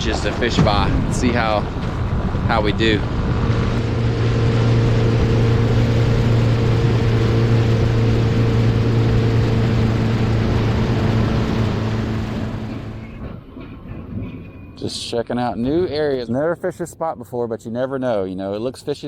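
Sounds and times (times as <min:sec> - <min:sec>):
outboard motor running: 0:00.0 - 0:13.2.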